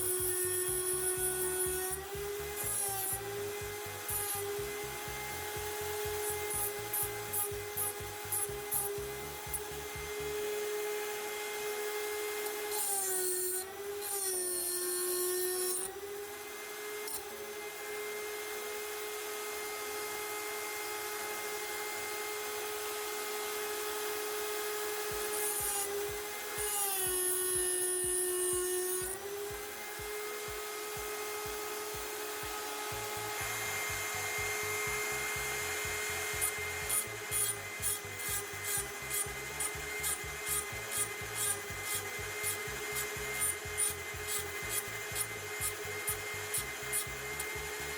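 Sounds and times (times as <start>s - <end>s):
gritty hiss of tool cutting: 0.0s - 10.3s, 25.0s - 30.1s, 34.9s - 47.9s
small power tool running: 0.0s - 47.9s.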